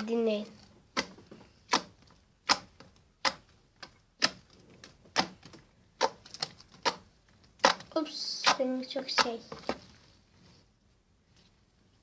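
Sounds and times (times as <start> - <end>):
slime popping and clicking: 1.7 - 4.4.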